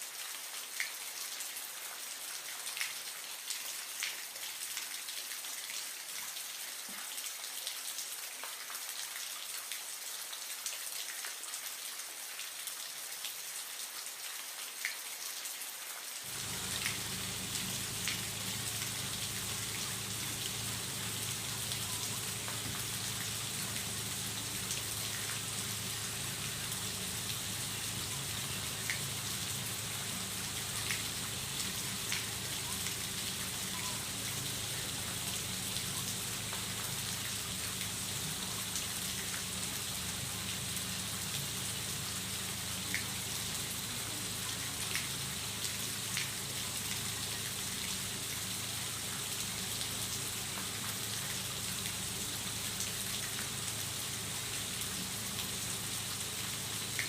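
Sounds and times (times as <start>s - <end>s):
small water drips: 16.2s - 57.0s
water splashing and trickling: 16.2s - 57.0s
low motor hum: 16.3s - 50.7s.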